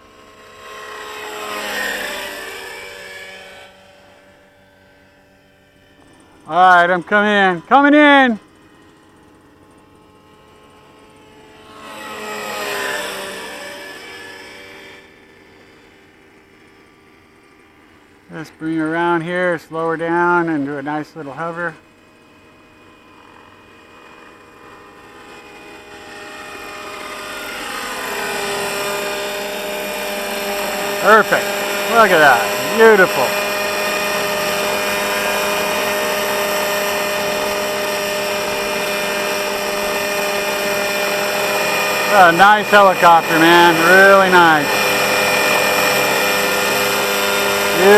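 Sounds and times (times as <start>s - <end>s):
model helicopter flying past: 0.0s - 47.9s.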